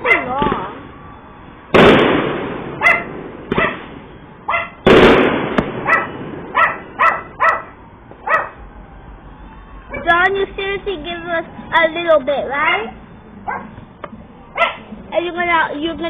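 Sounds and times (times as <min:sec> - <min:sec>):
dog barking: 0:00.0 - 0:00.3, 0:02.8 - 0:03.8, 0:04.5 - 0:04.8, 0:05.8 - 0:08.6, 0:13.5 - 0:13.8, 0:14.6 - 0:14.8
fireworks exploding: 0:00.0 - 0:01.0, 0:01.6 - 0:07.0.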